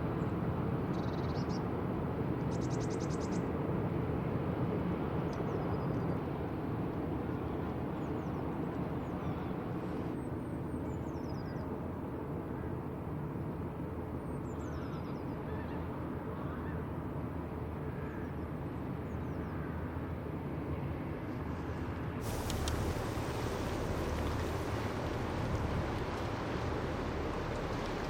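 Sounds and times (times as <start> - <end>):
ship engine rumble: 22.2 - 28.0
wind buffeting microphone: 22.2 - 28.0.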